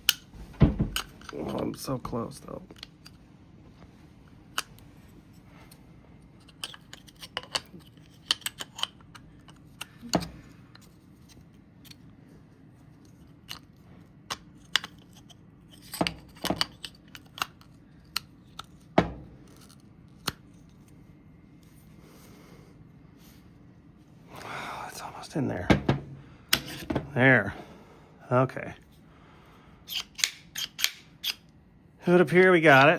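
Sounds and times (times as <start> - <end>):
metallic clicks and scrapes: 29.9 - 31.5.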